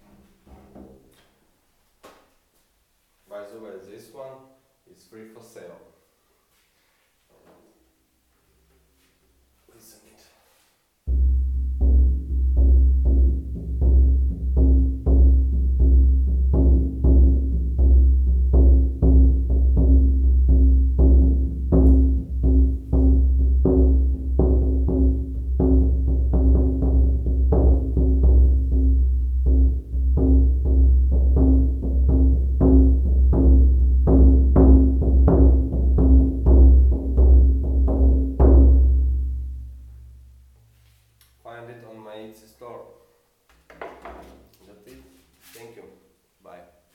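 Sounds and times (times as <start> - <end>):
frame drum beaten: 11.1 - 40.4.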